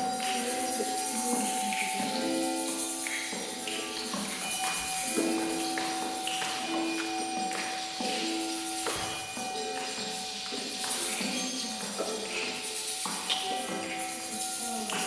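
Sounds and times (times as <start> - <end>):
jingling bells: 0.0 - 15.0
ringing percussion tones: 0.0 - 15.0
tambourine shaking: 0.0 - 15.0.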